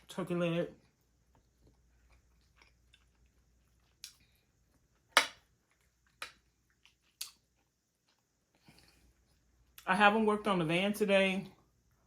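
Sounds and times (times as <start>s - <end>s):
soft chewing clicks: 0.9s - 4.8s.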